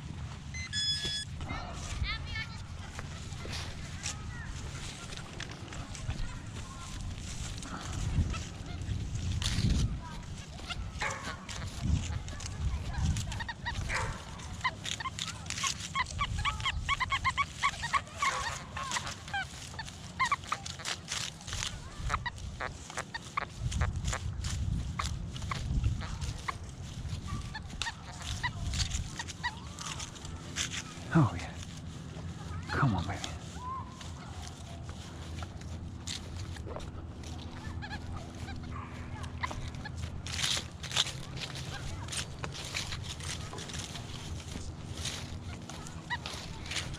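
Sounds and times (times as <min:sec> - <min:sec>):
metal detector beeps: 0:00.5 - 0:01.4
metal detector clicks: 0:00.6 - 0:01.3
handling clicks and scuffs: 0:09.4 - 0:46.9.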